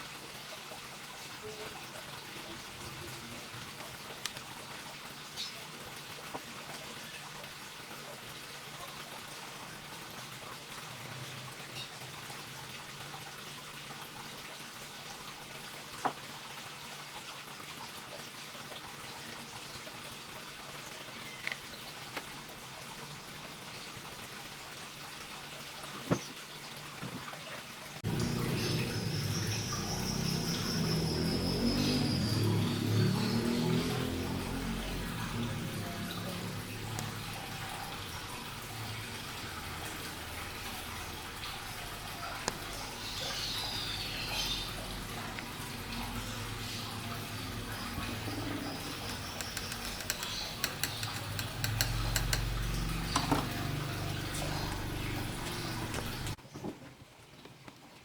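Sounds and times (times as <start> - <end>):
faint clicks and taps: 49.0 - 53.5.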